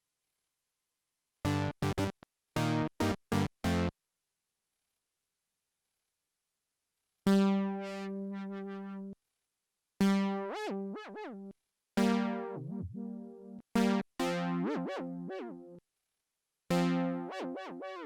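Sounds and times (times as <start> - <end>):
buzzy synthesizer notes: 10.0 - 15.8, 16.7 - 18.0.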